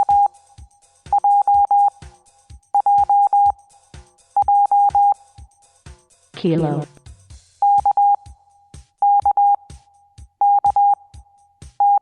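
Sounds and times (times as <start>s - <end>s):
morse code beeps: 0.0s - 0.3s, 1.1s - 1.9s, 2.8s - 3.5s, 4.4s - 5.2s, 7.6s - 8.2s, 9.0s - 9.6s, 10.4s - 11.0s, 11.8s - 12.0s.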